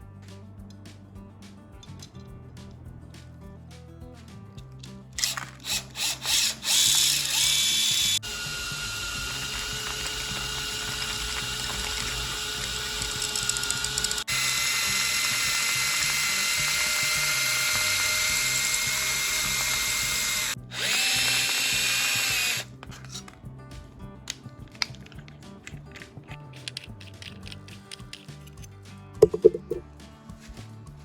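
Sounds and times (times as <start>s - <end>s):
background music with steady beat: 0.0s - 31.0s
power tool motor whine: 5.2s - 22.6s.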